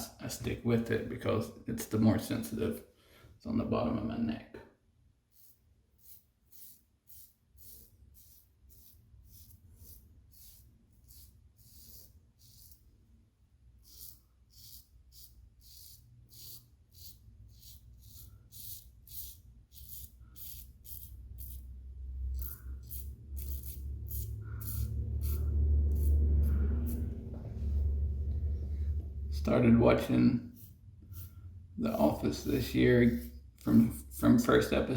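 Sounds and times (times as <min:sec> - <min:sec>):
razor scraping stubble: 0:05.3 - 0:12.9, 0:13.8 - 0:27.2, 0:29.4 - 0:34.8.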